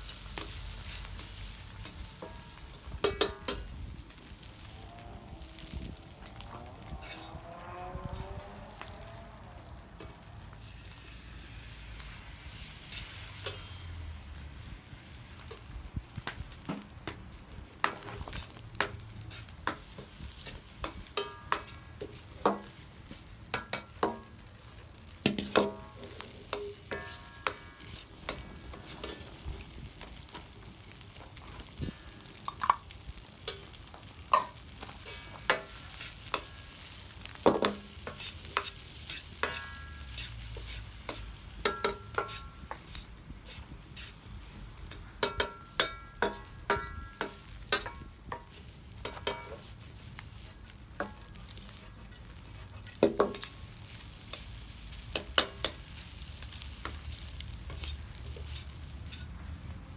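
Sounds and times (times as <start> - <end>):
rice sizzling in a metal pan: 0.0 - 59.9
utensil scraping and clicking on pan: 0.3 - 3.7, 12.8 - 13.9, 17.8 - 24.4, 25.2 - 29.5, 32.4 - 59.5.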